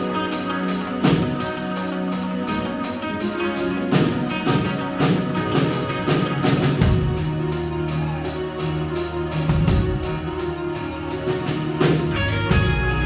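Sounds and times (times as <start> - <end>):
drum kit beat with cymbals: 0.0 - 13.0
sustained guitar and bass: 0.0 - 13.0.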